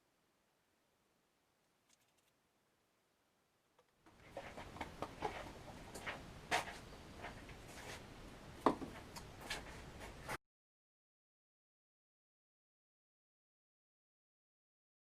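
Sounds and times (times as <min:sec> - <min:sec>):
low background noise: 0:00.0 - 0:10.4
knocks and taps of tools: 0:08.6 - 0:09.0.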